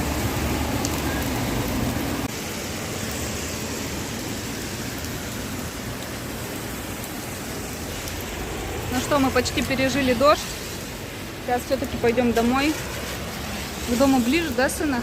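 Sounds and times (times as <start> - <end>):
heavy rain pouring: 0.0 - 15.0.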